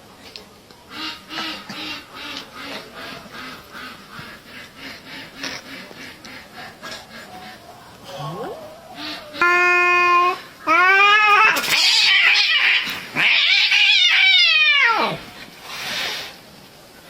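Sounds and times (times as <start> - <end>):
cats yowling: 7.4 - 15.3
cat hissing: 8.9 - 16.4.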